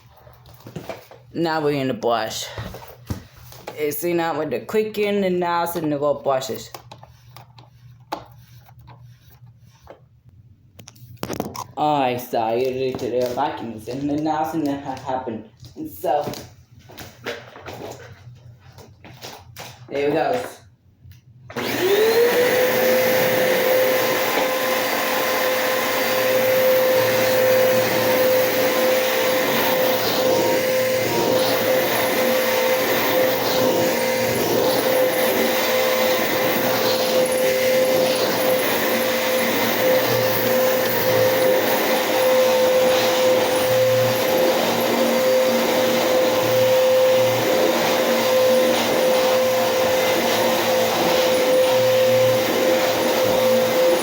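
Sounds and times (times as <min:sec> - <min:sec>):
vacuum cleaner running: 0:12.1 - 0:15.0, 0:21.5 - 0:54.0.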